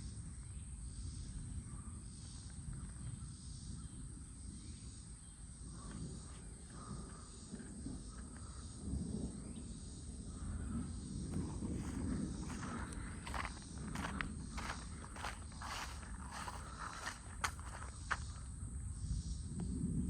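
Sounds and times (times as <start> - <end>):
gusty wind on microphone: 5.7 - 20.0.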